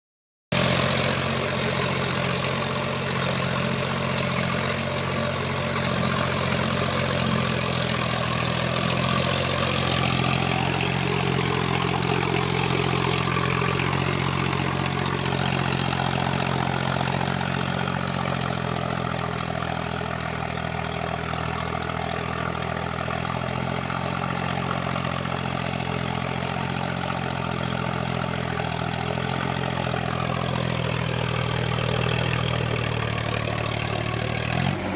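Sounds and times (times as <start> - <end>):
tractor diesel engine idling: 0.5 - 34.9.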